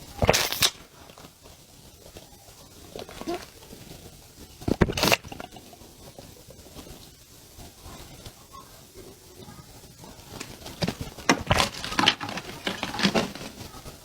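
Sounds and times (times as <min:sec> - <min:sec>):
drinking sips and gulps: 0:04.7 - 0:05.9.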